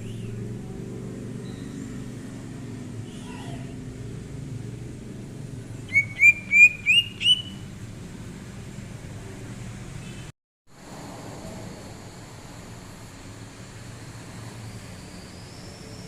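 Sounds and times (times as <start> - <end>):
bird whistling rising notes: 5.9 - 7.6.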